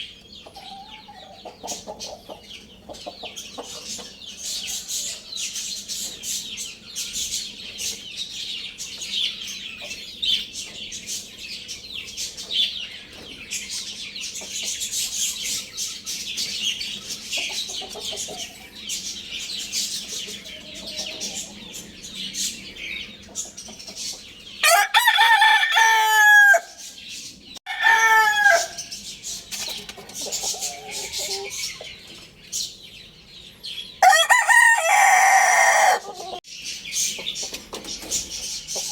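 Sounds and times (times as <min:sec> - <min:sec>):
small birds chirping: 0:00.0 - 0:24.6, 0:25.4 - 0:38.9
rooster crowing: 0:24.6 - 0:26.8, 0:27.7 - 0:28.9, 0:34.0 - 0:36.4.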